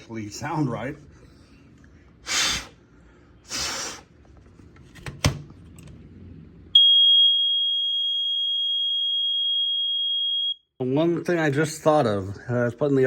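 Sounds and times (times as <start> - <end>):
short hissing bursts: 2.2 - 2.8, 3.4 - 4.1
smoke alarm high-pitched tone: 6.8 - 10.7.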